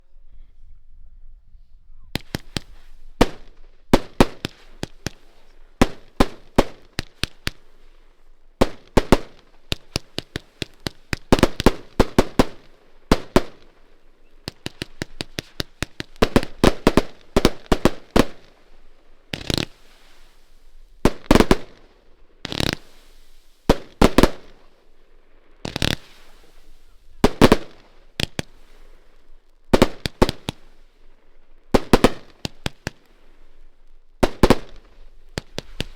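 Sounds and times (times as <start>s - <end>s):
heavy firework bangs: 2.2s - 7.9s, 8.6s - 18.6s, 21.1s - 21.8s, 25.6s - 28.9s, 29.8s - 30.8s, 31.7s - 33.4s, 34.2s - 35.9s.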